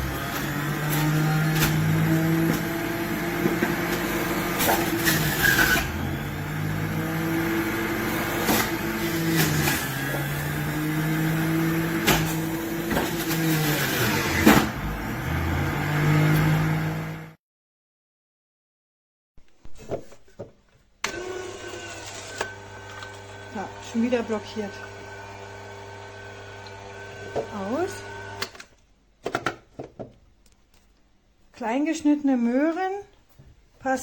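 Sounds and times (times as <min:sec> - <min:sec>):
food cracking in juicer: 0:00.0 - 0:10.7, 0:11.3 - 0:14.8, 0:21.1 - 0:23.5, 0:25.2 - 0:27.5
electric juicer motor humming: 0:00.0 - 0:17.3, 0:21.1 - 0:28.6.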